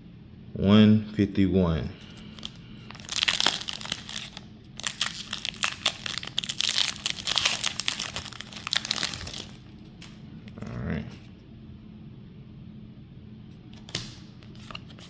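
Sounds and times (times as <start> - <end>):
foil wrapper crinkling and tearing: 2.1 - 9.8.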